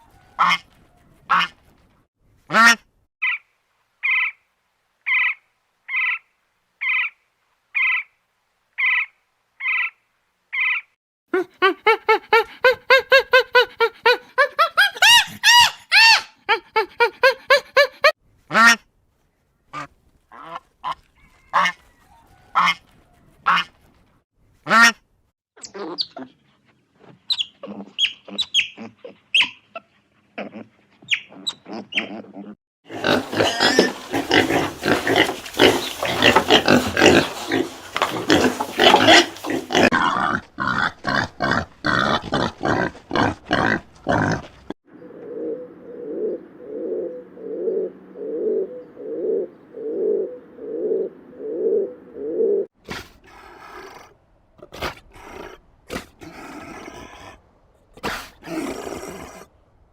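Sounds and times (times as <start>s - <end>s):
animal calls: 25.6s - 40.8s.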